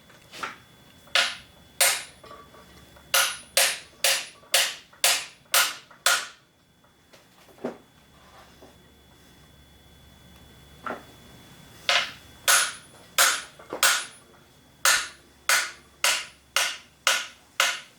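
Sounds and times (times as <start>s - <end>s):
hammer striking metal punch: 1.2s - 2.2s, 3.1s - 6.4s, 11.9s - 14.2s, 14.8s - 17.9s.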